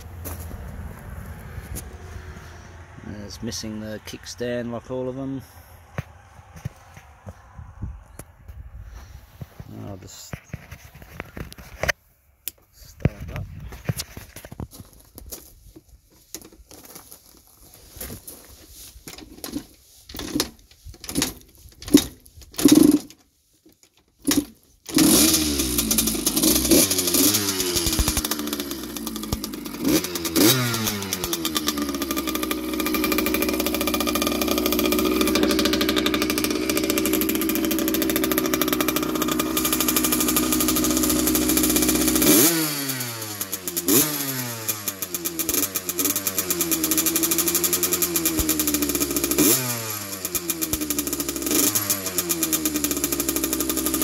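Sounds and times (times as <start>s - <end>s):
dirt bike engine kick starting: 18.1s - 23.2s, 24.1s - 54.0s
dirt bike engine revving: 22.0s - 23.1s, 24.2s - 54.0s.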